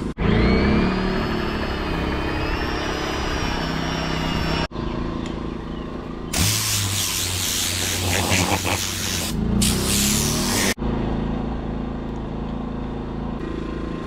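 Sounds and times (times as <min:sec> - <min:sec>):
loud even hiss: 0:06.3 - 0:10.8.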